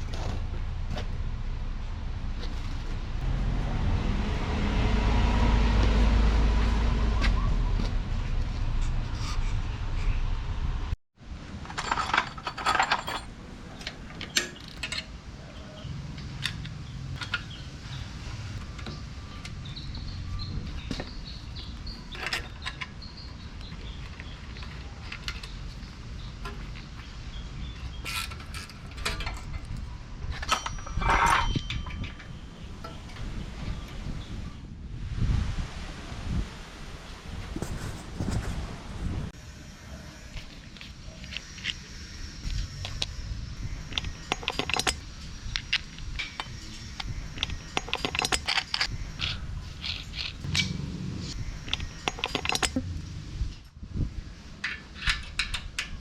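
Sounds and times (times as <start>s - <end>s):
low wind rumble: 0.0s - 56.0s
hand tools clicking and clinking: 11.7s - 15.1s, 28.0s - 33.0s, 43.8s - 50.8s, 51.6s - 53.0s.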